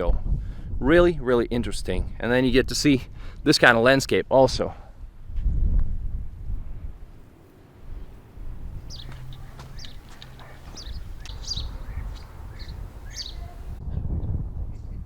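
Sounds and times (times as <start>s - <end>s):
small birds chirping: 7.8s - 13.8s.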